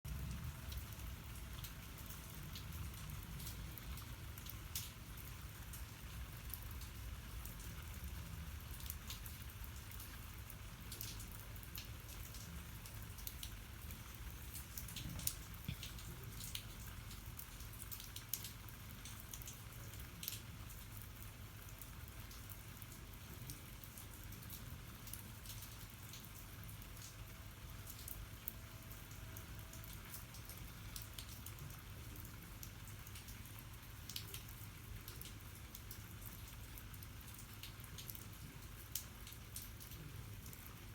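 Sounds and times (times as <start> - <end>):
steady rain falling: 0.1 - 40.9
drops ticking on a surface: 14.7 - 19.5.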